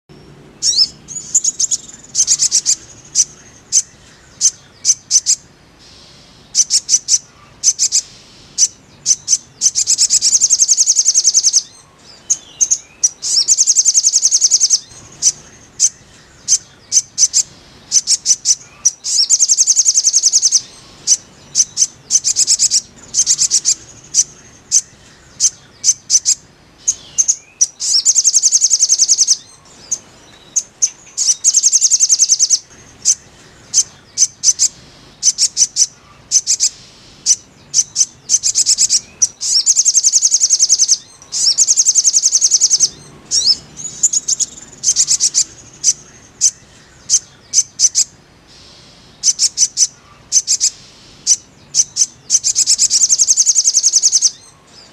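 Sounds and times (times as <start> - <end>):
bird rattling trills: 6.5 - 11.7, 12.3 - 29.4, 30.6 - 48.1, 49.2 - 54.4.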